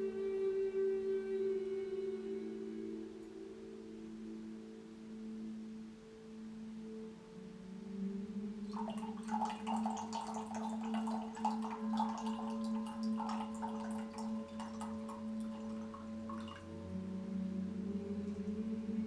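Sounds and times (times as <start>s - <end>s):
sustained singing bowl drone: 0.0s - 19.0s
water pouring and gurgling: 8.7s - 16.7s.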